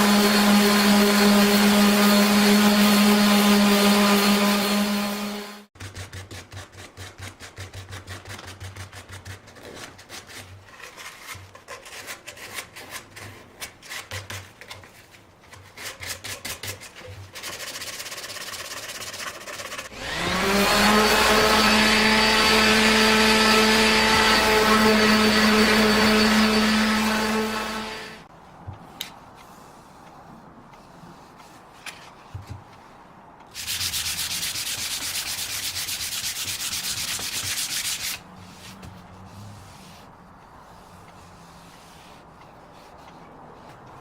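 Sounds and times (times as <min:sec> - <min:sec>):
rubbing strokes on wood: 0:15.7 - 0:28.3, 0:33.5 - 0:44.0
power tool motor humming: 0:19.9 - 0:28.2.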